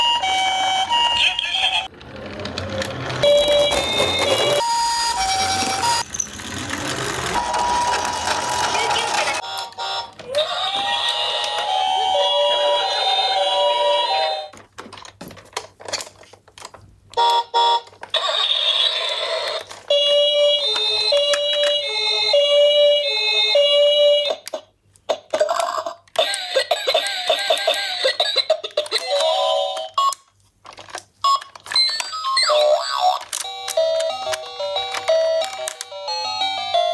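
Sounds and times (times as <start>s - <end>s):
toy ambulance hi-lo sirens: 0.0s - 14.5s, 17.2s - 24.6s, 31.3s - 36.9s.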